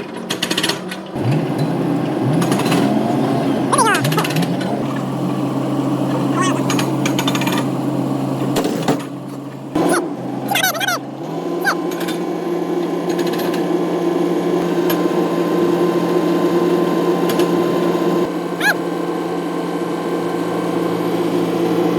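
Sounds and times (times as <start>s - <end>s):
power tool motor running: 0.3s - 8.5s
brief squeals: 11.6s - 11.8s, 18.6s - 18.8s.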